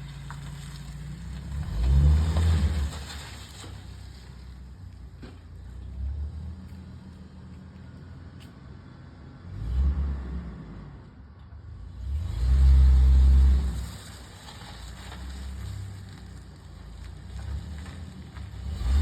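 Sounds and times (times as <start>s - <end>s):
car engine rumbling: 0.0s - 19.0s
engine revving: 1.4s - 3.2s, 18.6s - 19.0s.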